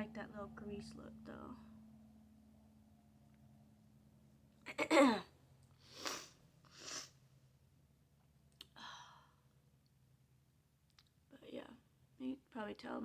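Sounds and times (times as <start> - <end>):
hissy breaths: 5.8 - 7.1.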